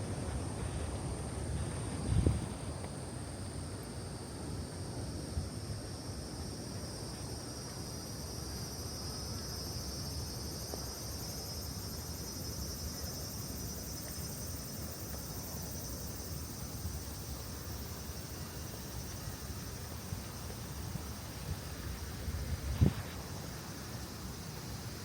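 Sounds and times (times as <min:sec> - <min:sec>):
insects chirring: 0:00.0 - 0:25.0.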